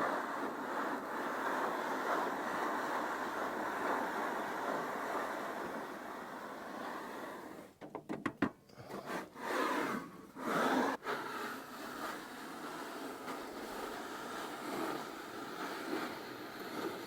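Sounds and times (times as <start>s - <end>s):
steady hiss: 0.0s - 7.8s.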